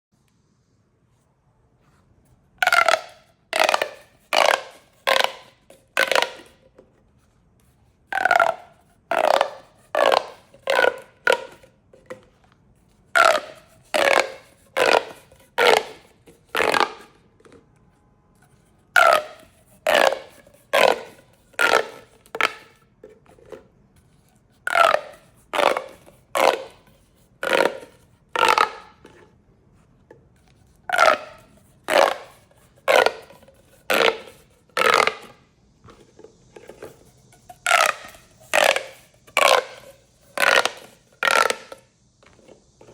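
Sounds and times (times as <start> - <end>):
plastic pop tubes popping: 2.6 - 6.6, 8.1 - 12.2, 13.2 - 17.6, 19.0 - 22.8, 24.7 - 29.1, 30.9 - 42.9.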